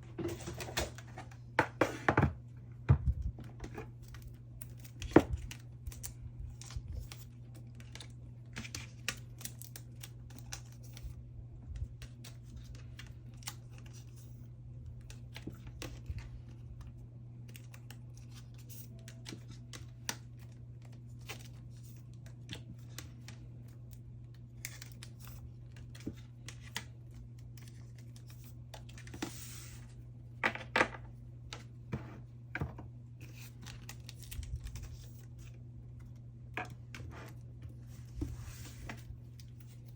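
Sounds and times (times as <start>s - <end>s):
steady low hum: 0.0s - 39.9s
thin plastic crinkling: 33.1s - 39.9s.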